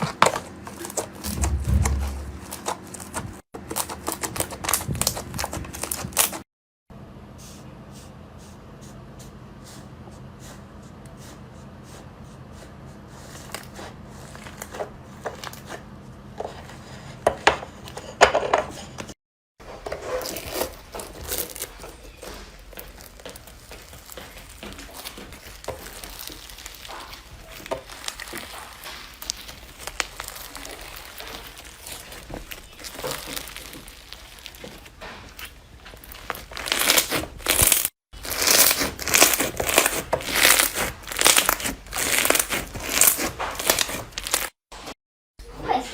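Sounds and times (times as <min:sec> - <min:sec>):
low hum: 0:01.2 - 0:02.8
slime squished crackling: 0:22.6 - 0:44.6.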